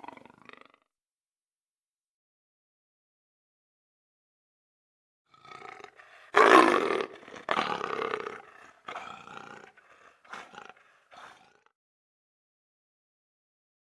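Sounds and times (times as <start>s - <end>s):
leopard roaring: 5.4s - 11.6s.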